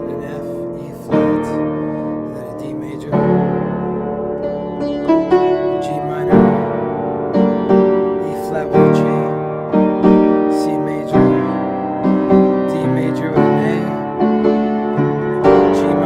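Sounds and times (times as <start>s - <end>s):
piano chords: 0.0s - 16.0s.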